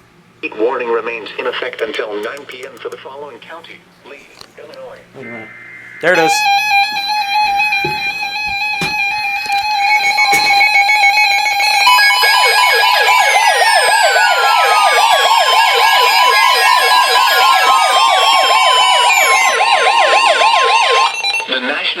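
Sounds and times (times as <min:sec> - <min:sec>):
steady weather alert tone: 0:05.2 - 0:22.0
warbling electronic siren alarm: 0:05.2 - 0:22.0
beeping alert tones: 0:06.0 - 0:21.6.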